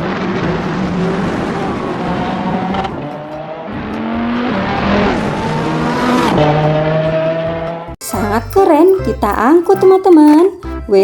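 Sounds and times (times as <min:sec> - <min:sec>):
race car engine revving: 0:00.0 - 0:08.0.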